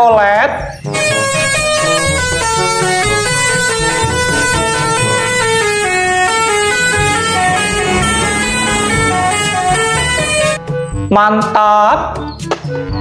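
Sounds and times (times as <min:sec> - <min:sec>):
multi-tone bus horn tune: 0:00.9 - 0:10.6.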